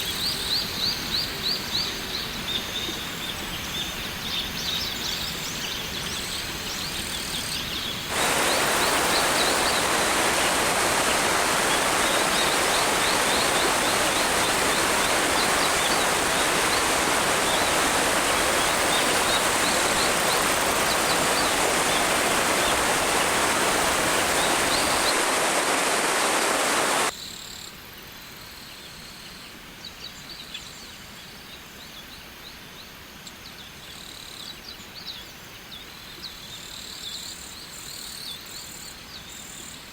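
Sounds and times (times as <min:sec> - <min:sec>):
quiet water flowing: 0:00.3 - 0:27.1
waterfall rushing: 0:08.1 - 0:27.1.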